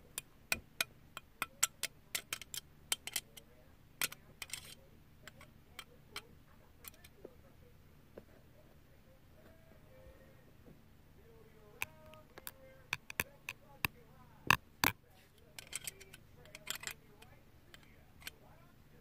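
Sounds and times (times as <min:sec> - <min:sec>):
sharp clicks and taps: 0:11.8 - 0:15.0.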